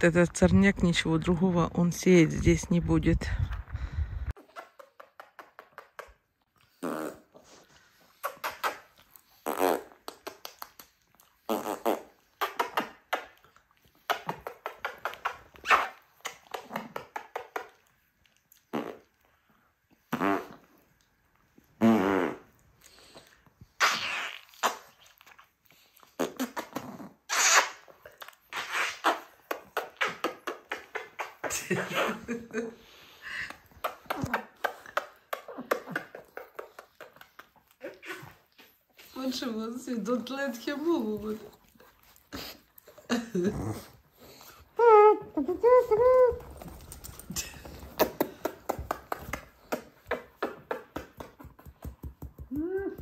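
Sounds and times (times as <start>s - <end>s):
dog grunting and whining: 42.1s - 48.4s.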